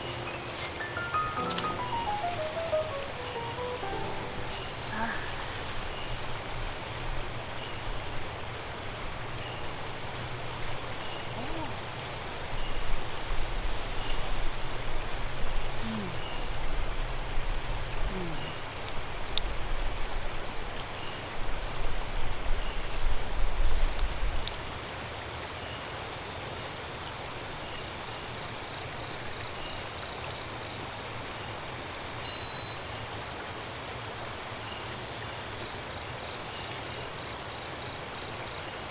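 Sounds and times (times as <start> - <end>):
flowing river water: 0.0 - 19.7
insects chirring: 0.0 - 19.8.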